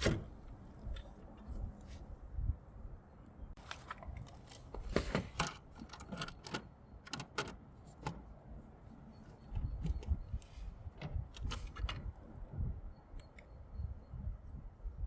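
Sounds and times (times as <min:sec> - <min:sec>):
parts clicking and knocking: 0:03.6 - 0:12.2.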